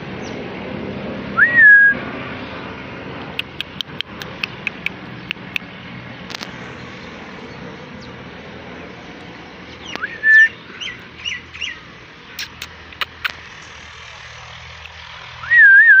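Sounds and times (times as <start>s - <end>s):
sharp clicks: 3.2s - 5.7s, 6.3s - 6.7s, 12.4s - 15.1s
parrot whistling and chirping: 9.8s - 11.8s.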